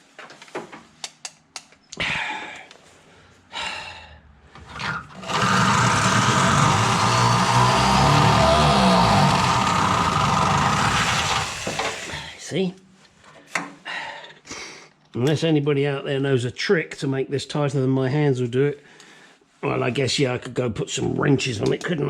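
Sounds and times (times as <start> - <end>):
electric drill running: 5.1 - 12.3.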